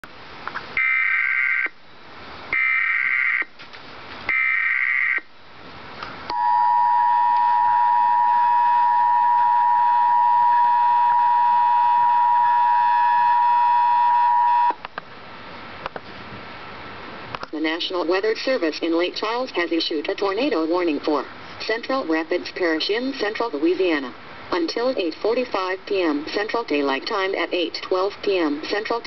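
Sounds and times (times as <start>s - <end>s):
two-tone attention signal: 6.3s - 14.8s.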